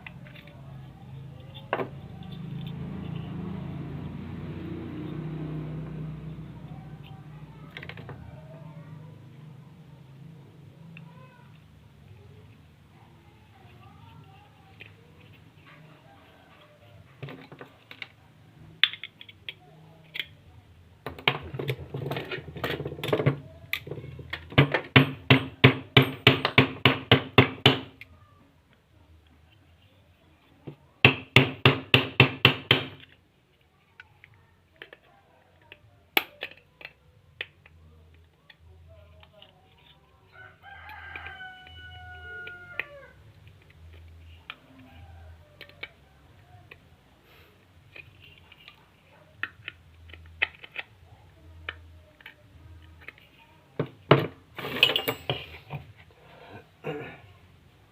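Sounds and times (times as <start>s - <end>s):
hammer tapping: 24.6s - 27.9s.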